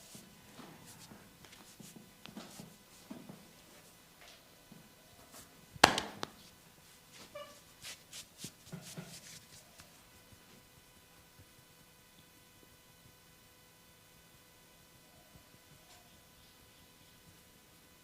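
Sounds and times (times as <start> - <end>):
soft pats and taps on skin: 1.4 - 3.2, 7.8 - 10.0.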